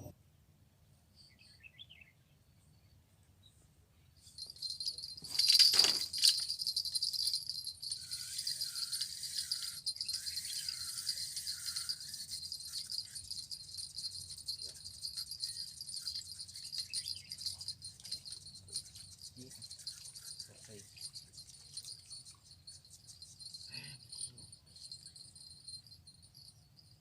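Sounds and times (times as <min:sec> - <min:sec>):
loud jingling clatter: 0:04.3 - 0:27.0
insects trilling: 0:04.4 - 0:26.9
wavering warble: 0:04.6 - 0:25.8.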